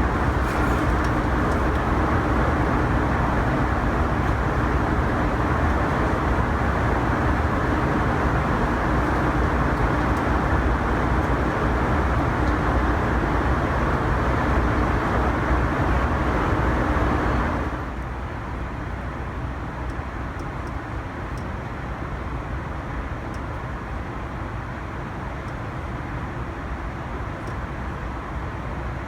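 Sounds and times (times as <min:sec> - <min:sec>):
aircraft cabin noise: 0:00.0 - 0:17.7.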